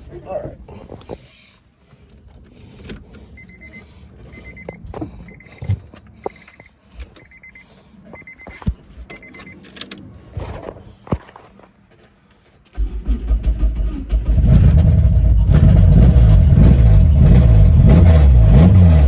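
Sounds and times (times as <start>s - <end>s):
dashboard warning chime beeping: 3.3s - 9.7s.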